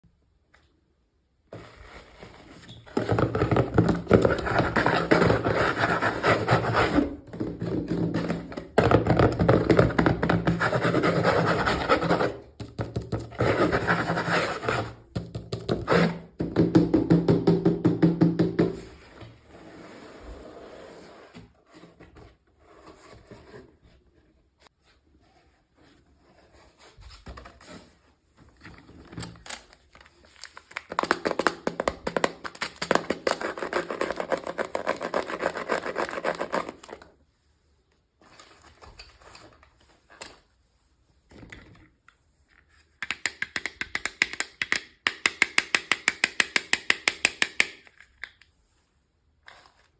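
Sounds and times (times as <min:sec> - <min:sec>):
packaging crinkling and rustling: 0:29.2 - 0:31.2.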